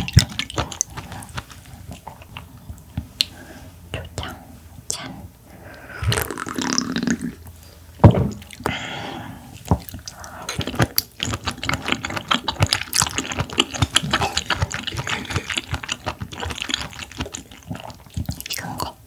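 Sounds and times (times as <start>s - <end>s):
wet squelchy chewing clicks: 9.6s - 19.0s.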